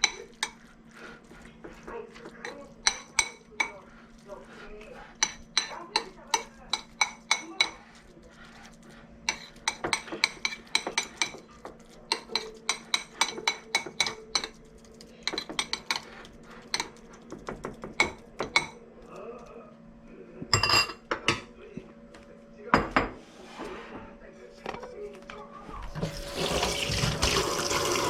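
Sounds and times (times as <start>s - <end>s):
cutlery tapping a dish: 5.2s - 7.8s, 9.3s - 14.6s.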